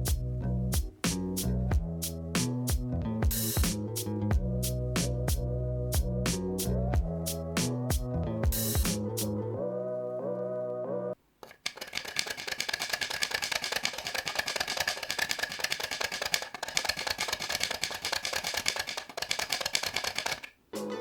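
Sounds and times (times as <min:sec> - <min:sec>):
printer mechanical clicking: 0:11.4 - 0:20.5.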